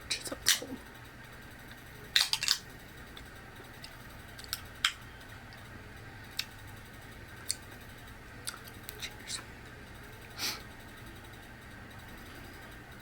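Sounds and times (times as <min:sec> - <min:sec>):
drink container cracks and clicks: 0:02.2 - 0:02.6.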